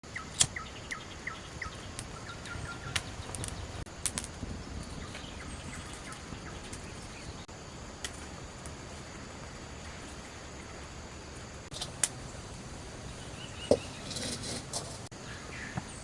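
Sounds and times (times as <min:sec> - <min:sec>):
small bird chirping: 0:00.0 - 0:03.9, 0:04.7 - 0:16.0
low outdoor rumble: 0:00.0 - 0:16.0
sharp clicks: 0:00.3 - 0:01.0, 0:01.9 - 0:04.4.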